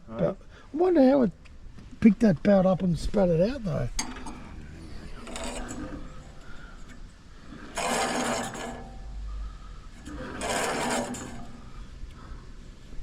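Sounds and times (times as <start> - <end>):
band wheel and belt whirring: 4.0 - 12.2.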